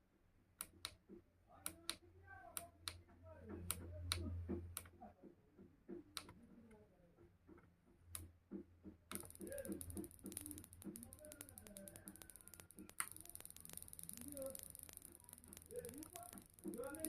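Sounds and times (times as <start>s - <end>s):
mechanical clicking: 9.1s - 17.0s
high hiss: 9.2s - 17.0s.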